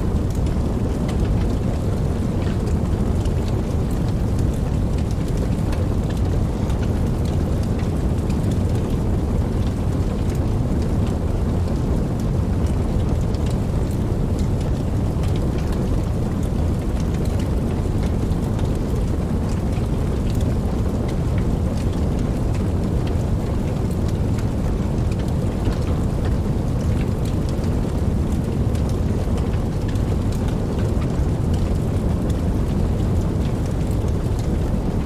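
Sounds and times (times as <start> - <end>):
steady rain: 0.0 - 35.0.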